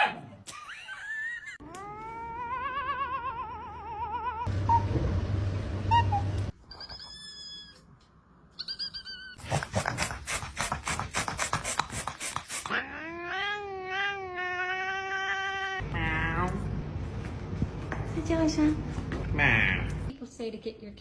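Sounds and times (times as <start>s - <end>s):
cat yowling: 1.7s - 4.8s, 12.7s - 16.4s
high squeaky cat calls: 5.9s - 7.9s, 8.5s - 9.4s.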